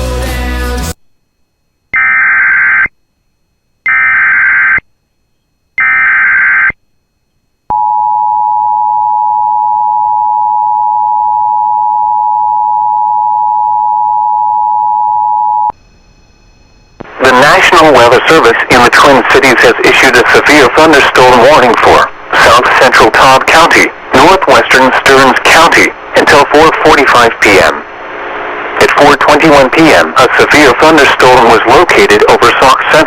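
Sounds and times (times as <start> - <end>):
screeching data tones: 1.9 - 2.9, 3.8 - 4.8, 5.8 - 6.8.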